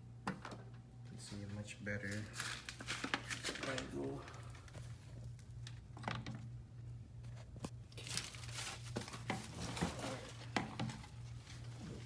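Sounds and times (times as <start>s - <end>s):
steady low hum: 3.7s - 9.5s.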